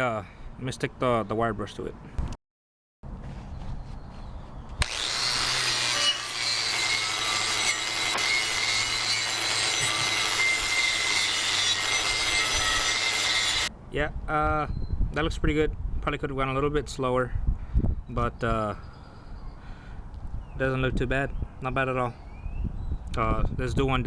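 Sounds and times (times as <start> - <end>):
wire brush scrubbing metal: 4.9 - 13.7.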